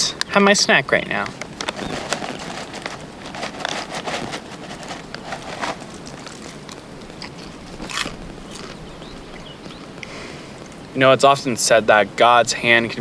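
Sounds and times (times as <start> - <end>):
light rustling and crackling: 1.1 - 10.8.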